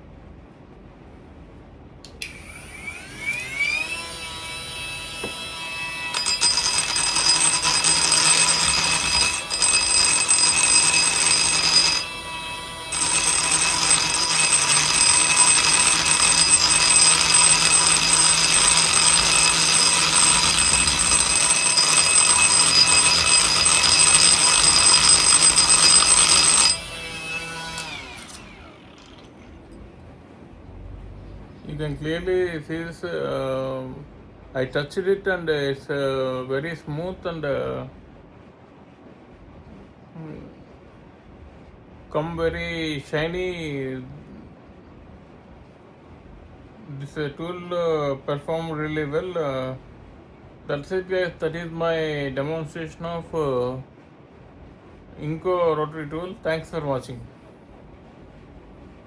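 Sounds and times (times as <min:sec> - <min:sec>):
die grinder whining: 0:02.1 - 0:29.3
grinder grinding metal: 0:02.8 - 0:28.7.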